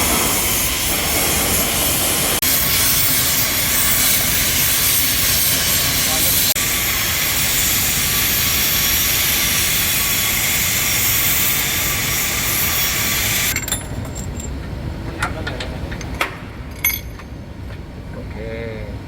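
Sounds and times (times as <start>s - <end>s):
loud hissing machine noise: 0.0s - 13.6s.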